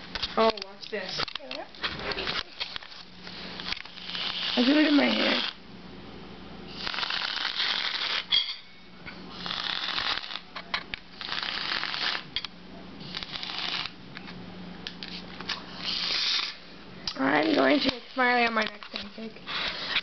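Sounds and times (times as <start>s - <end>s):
aerosol spray can hissing: 6.7s - 8.3s.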